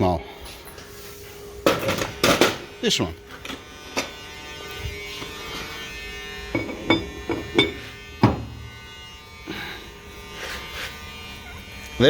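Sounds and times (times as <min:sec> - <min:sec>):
steady electrical hum: 0:00.0 - 0:12.0
metal knocking and clinking: 0:06.6 - 0:07.8.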